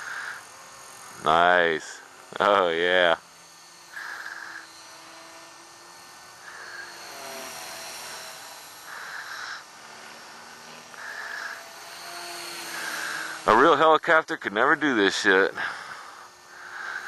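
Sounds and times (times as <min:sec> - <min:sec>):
model helicopter rotor whine: 0:00.0 - 0:17.0.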